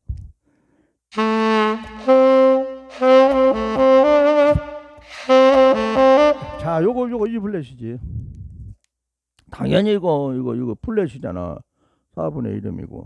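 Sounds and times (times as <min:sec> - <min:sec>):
saxophone melody: 0:01.1 - 0:07.4.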